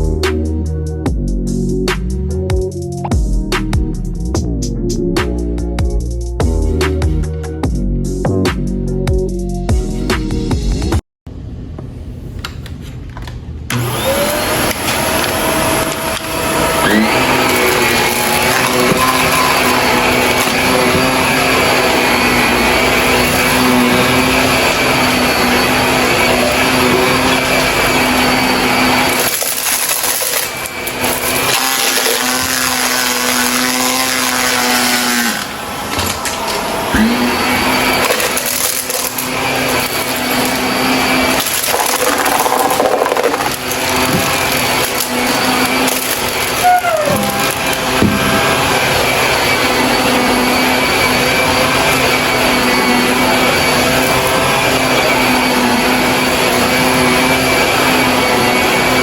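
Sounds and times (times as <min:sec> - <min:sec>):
vacuum cleaner motor running: 0:13.7 - 0:59.0.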